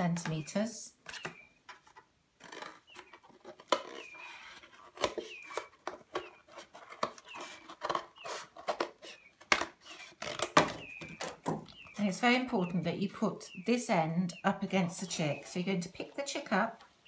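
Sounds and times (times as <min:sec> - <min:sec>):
scissors cutting cardboard: 0:02.4 - 0:11.4.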